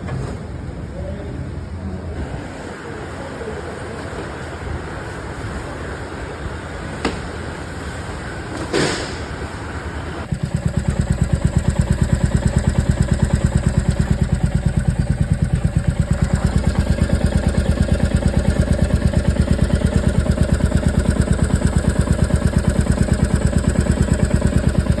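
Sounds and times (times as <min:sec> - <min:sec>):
motorcycle engine idling: 0:10.2 - 0:25.0
metallic engine ticking: 0:10.3 - 0:25.0.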